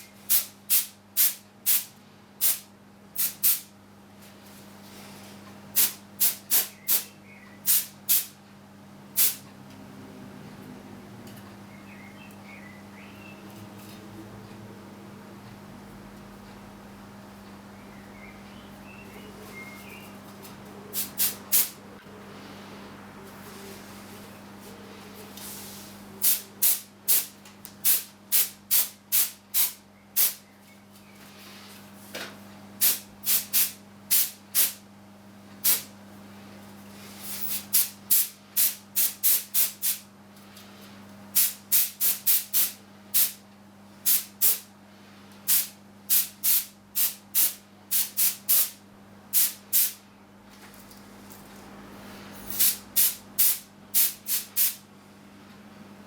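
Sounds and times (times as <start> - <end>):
compressed air spray bursts: 0.0 - 3.7, 5.8 - 7.1, 7.7 - 8.3, 9.2 - 9.4, 20.9 - 21.8, 26.2 - 30.4, 32.8 - 34.8, 35.6 - 35.9, 37.2 - 40.0, 41.4 - 43.4, 44.0 - 44.7, 45.5 - 50.0, 52.5 - 54.8
steady low hum: 0.0 - 56.0.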